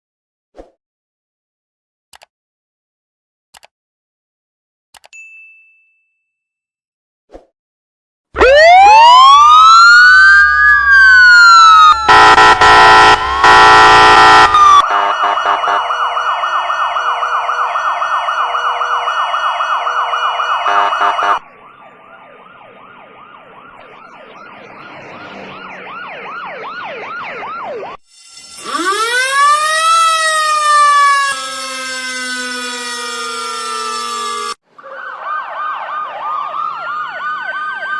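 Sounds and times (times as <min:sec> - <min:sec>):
fast siren yelp: 0:08.4 - 0:37.9
loud blaring siren blast: 0:08.4 - 0:37.9
siren wailing: 0:08.4 - 0:37.9.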